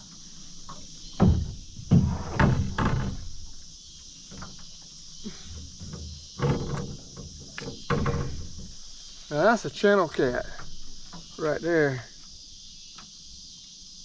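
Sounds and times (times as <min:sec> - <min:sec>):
crickets chirring: 0:00.0 - 0:14.0
knocks and thumps in metal boat: 0:00.6 - 0:03.6, 0:04.2 - 0:09.1.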